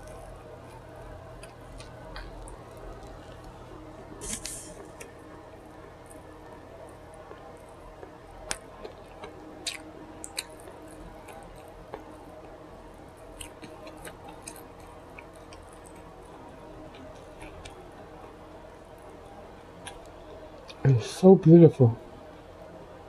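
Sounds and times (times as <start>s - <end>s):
person chewing food: 0.0s - 3.6s, 7.0s - 18.3s, 19.8s - 20.8s
faint steady hum: 0.0s - 23.0s.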